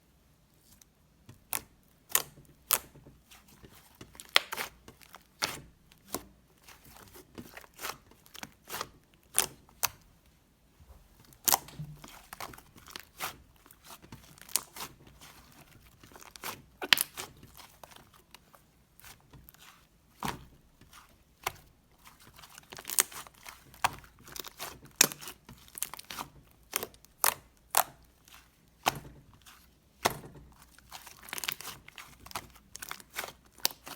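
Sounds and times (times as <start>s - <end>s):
slime popping and crackling: 11.4s - 17.9s, 21.4s - 33.9s.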